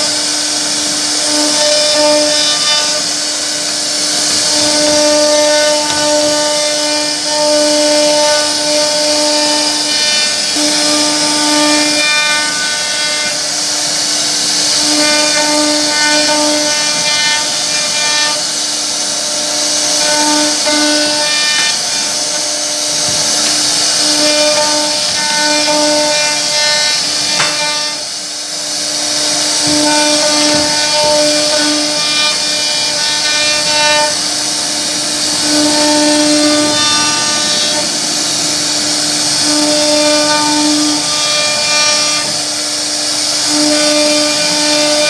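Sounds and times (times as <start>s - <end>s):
router spindle whine: 0.0s - 45.0s.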